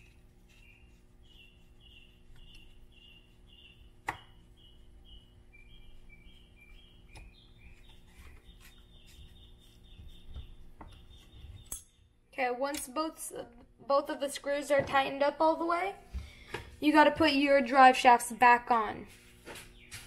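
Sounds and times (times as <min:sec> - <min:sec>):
bird chirping: 0:00.5 - 0:12.2.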